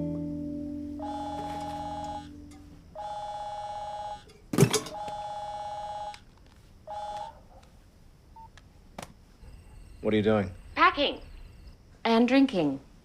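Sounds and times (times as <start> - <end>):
two-tone telephone ring: 1.0 - 2.3, 3.0 - 6.2, 6.9 - 7.3.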